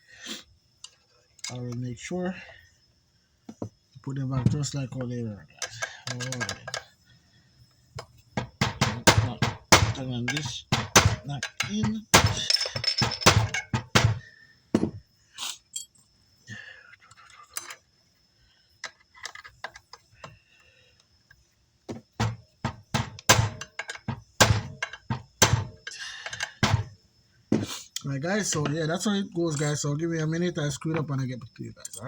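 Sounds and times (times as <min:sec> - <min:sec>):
tools knocking on a workbench: 0:03.5 - 0:03.8, 0:04.4 - 0:04.6, 0:08.0 - 0:15.0, 0:21.9 - 0:25.9, 0:26.6 - 0:27.7.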